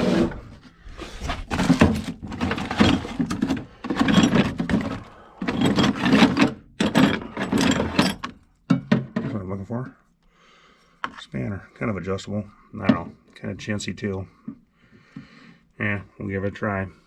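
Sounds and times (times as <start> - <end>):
drawer sliding: 0.0 - 8.3
metal tools clattering: 1.2 - 9.3.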